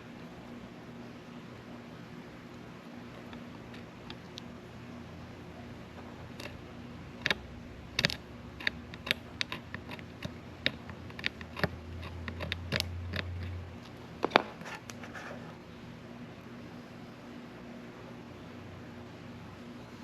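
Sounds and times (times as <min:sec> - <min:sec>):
low steady hum: 0:00.0 - 0:20.0
hand tools clicking and tapping: 0:06.4 - 0:06.6, 0:07.2 - 0:15.0.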